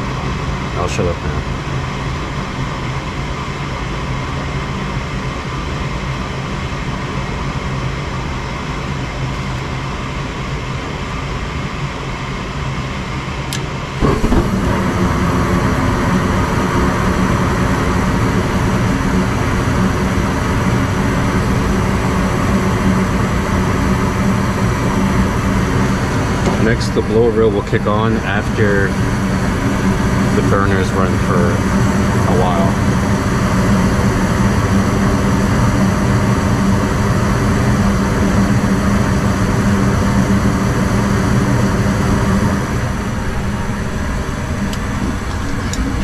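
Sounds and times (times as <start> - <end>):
furnace motor humming: 0.0 - 46.0.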